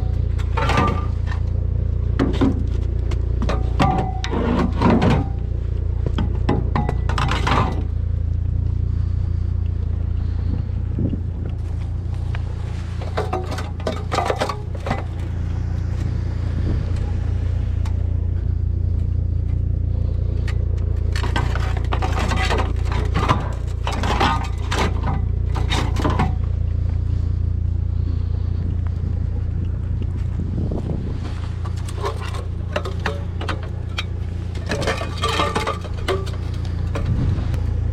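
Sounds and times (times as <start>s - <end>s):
clattering and scraping: 0.0s - 37.9s
vehicle engine humming: 0.0s - 37.9s.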